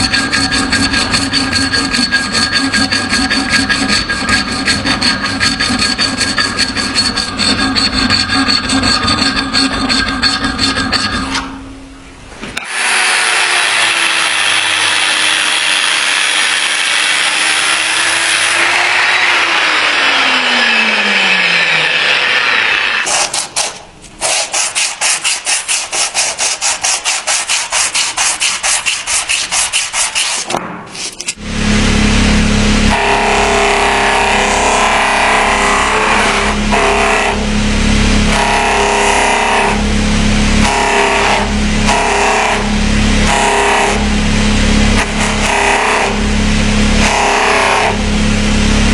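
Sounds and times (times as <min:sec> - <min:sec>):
sanding strokes: 0:00.0 - 0:10.9, 0:23.0 - 0:31.4
grinding on a knife blade: 0:00.0 - 0:11.6, 0:24.2 - 0:30.5
power tool humming: 0:12.6 - 0:23.1, 0:31.4 - 0:48.9.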